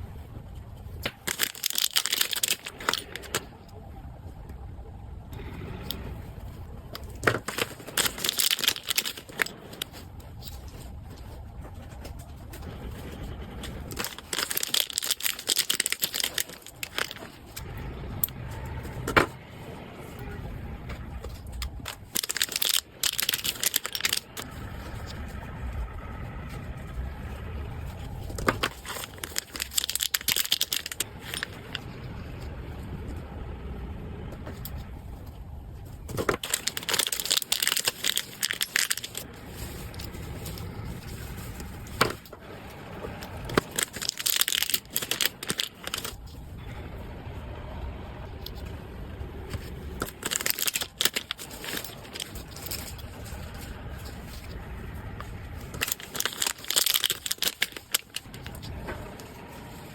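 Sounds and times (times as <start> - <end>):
low steady rumble: 0.0 - 59.9
packaging crinkling and rustling: 0.8 - 3.6, 6.4 - 19.4, 21.2 - 32.2, 36.0 - 42.4, 43.0 - 46.5, 49.4 - 59.9.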